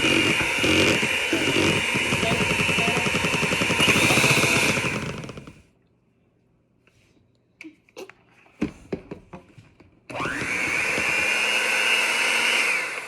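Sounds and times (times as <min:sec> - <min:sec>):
electric mixer whining: 0:00.0 - 0:05.6, 0:10.1 - 0:13.0.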